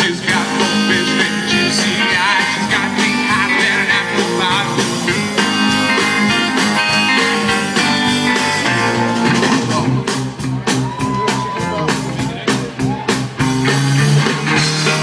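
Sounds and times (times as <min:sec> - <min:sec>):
person singing with vibrato: 0:00.0 - 0:05.2
live band playing: 0:00.0 - 0:15.0.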